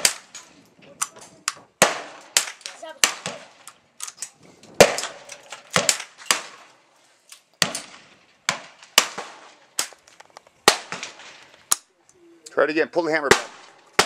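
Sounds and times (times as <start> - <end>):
gunshots: 0.0 - 0.4, 1.8 - 3.7, 4.8 - 6.7, 7.6 - 10.0, 10.6 - 11.6, 13.2 - 14.0.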